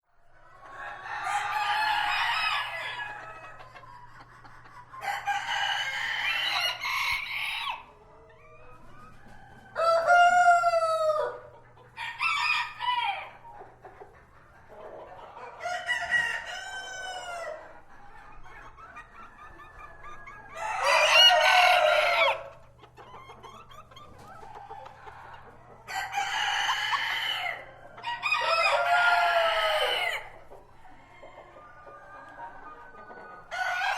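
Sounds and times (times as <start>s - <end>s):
roosters crowing: 0.6s - 3.6s, 5.0s - 7.9s, 9.2s - 13.4s, 15.4s - 17.7s, 19.6s - 22.6s, 24.6s - 32.1s, 33.5s - 33.9s.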